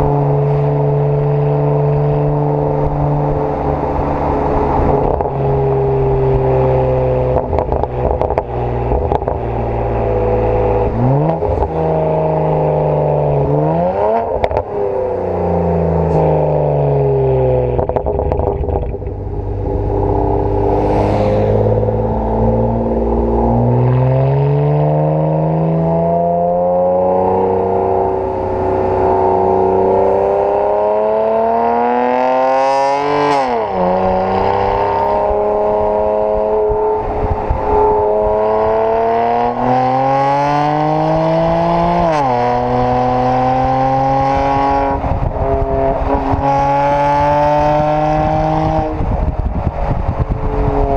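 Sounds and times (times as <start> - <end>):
car engine revving: 0.0 - 50.9
exhaust pops and crackles: 7.3 - 9.4, 14.3 - 14.7, 17.7 - 19.3, 44.8 - 47.3, 48.2 - 50.9.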